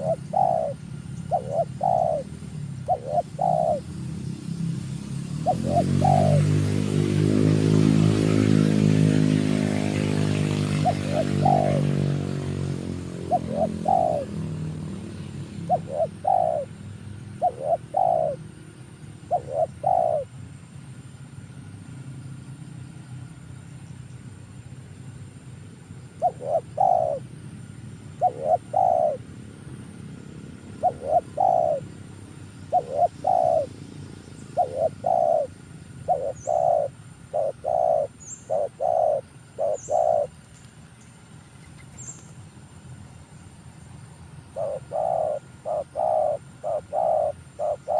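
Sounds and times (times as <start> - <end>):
dove cooing: 0.0 - 4.0, 5.3 - 20.3, 26.2 - 27.3, 28.1 - 29.3, 30.6 - 32.0, 32.6 - 33.8, 34.4 - 40.4, 44.5 - 47.9.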